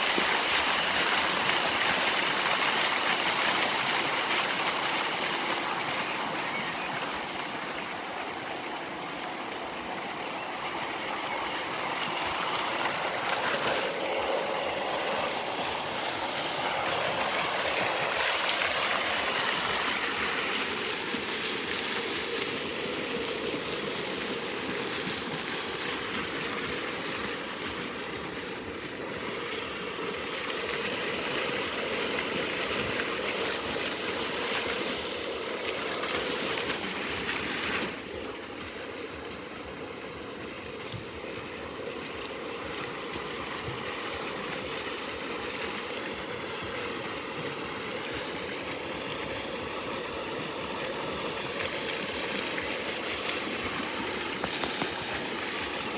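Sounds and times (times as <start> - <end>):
fountain water splashing: 0.0 - 55.9.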